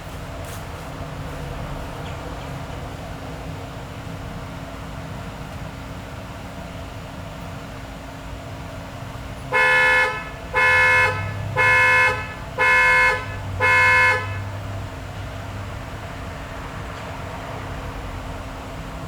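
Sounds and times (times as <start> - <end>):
car horn honking: 9.5 - 14.7.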